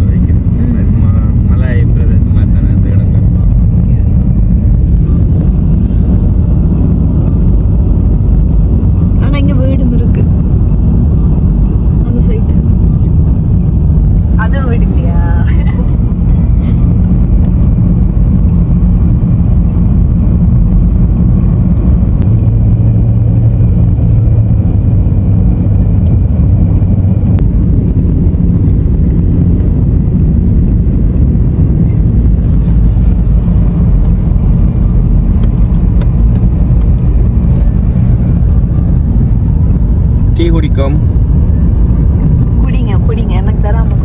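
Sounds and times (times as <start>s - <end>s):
car driving rumble from inside: 0.0s - 44.0s.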